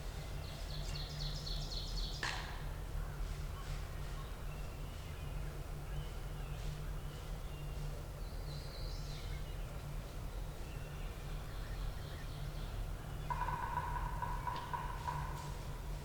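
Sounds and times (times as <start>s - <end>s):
wild birds calling: 13.1s - 15.8s.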